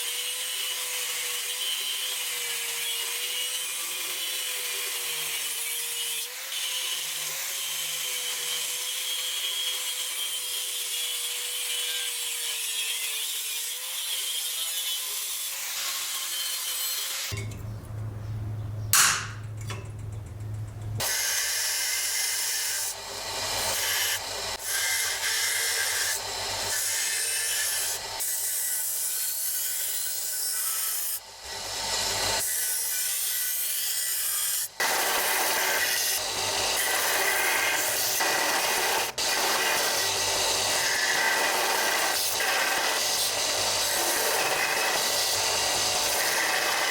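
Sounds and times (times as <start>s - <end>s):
low steady hum: 17.4s - 21.0s.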